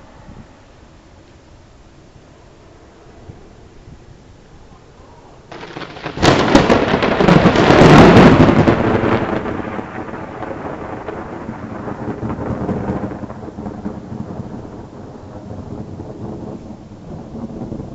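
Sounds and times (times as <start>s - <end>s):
thunderclap and rumble: 5.4s - 17.9s.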